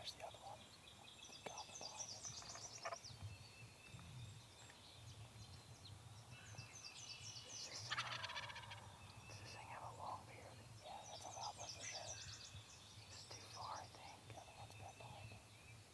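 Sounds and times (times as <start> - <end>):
songbirds chirping: 0.0 - 15.9
turkey gobbling: 7.9 - 8.8.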